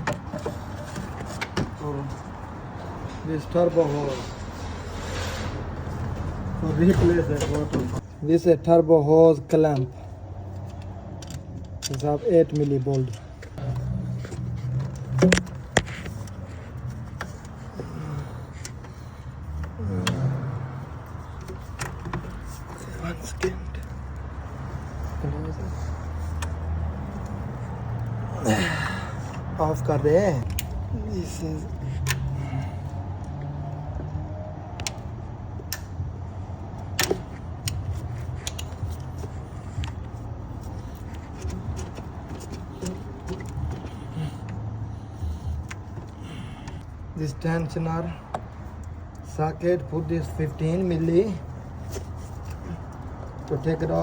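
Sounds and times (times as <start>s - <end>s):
hand tools clicking and clinking: 9.5s - 33.4s, 36.7s - 46.8s
metallic clicks of hand tools: 36.8s - 39.1s.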